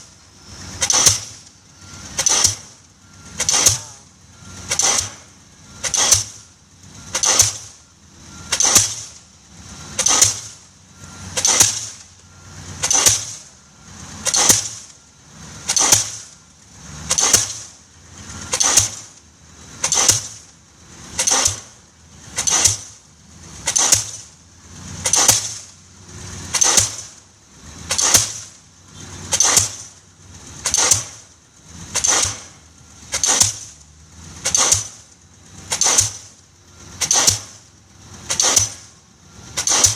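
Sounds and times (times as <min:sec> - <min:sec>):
pile hammer striking: 0:00.8 - 0:01.5, 0:02.1 - 0:04.0, 0:04.6 - 0:06.4, 0:07.1 - 0:07.8, 0:08.5 - 0:09.2, 0:10.0 - 0:10.6, 0:11.3 - 0:12.1, 0:12.8 - 0:13.5, 0:14.2 - 0:15.0, 0:15.7 - 0:16.3, 0:17.1 - 0:17.7, 0:18.5 - 0:19.2, 0:19.8 - 0:20.5, 0:21.2 - 0:21.8, 0:22.4 - 0:23.0, 0:23.6 - 0:24.3, 0:25.0 - 0:25.8, 0:26.5 - 0:27.2, 0:27.9 - 0:28.6, 0:29.3 - 0:30.0, 0:30.6 - 0:36.4, 0:37.0 - 0:37.6, 0:38.3 - 0:38.9, 0:39.6 - 0:39.9.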